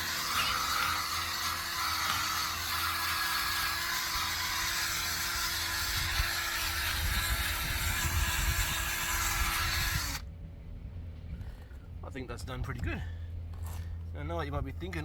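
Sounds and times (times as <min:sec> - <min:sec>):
power tool motor whining: 0:00.0 - 0:10.2.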